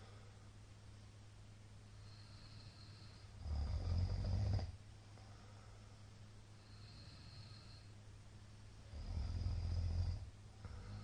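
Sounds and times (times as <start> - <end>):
man snoring loudly: 3.4 - 4.8, 8.9 - 11.0.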